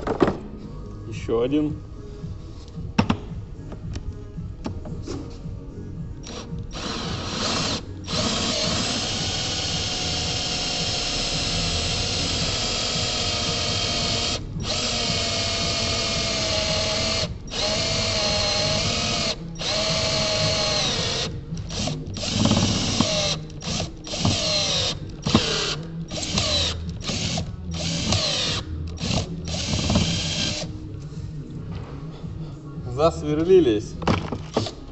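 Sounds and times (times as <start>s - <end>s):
electric drill whining: 6.2s - 30.7s.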